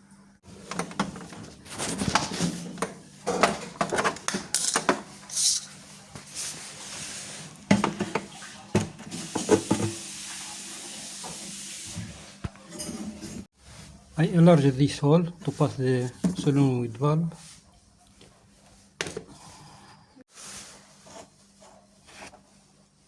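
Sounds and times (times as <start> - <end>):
tools and parts clattering: 0.6 - 5.8.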